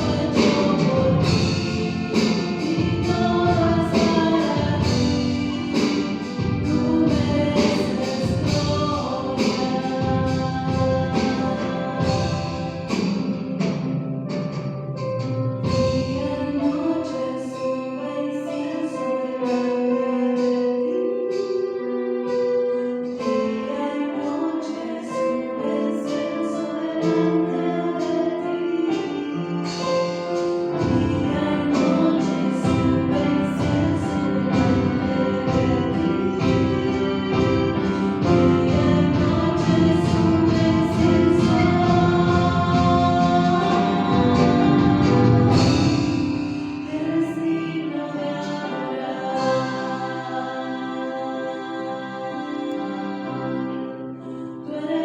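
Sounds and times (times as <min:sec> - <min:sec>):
choir singing sustained chords: 0:00.0 - 0:14.3, 0:15.6 - 0:55.0.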